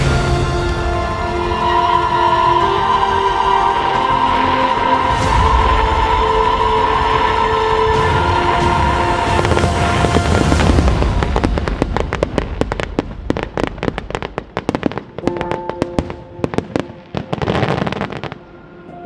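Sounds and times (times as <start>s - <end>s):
music with held notes: 0.0s - 12.6s
fireworks rumbling and crackling: 0.0s - 18.5s.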